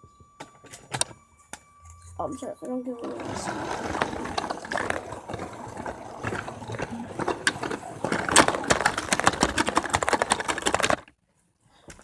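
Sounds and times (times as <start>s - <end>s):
toy train clattering on plastic track: 3.0s - 11.1s.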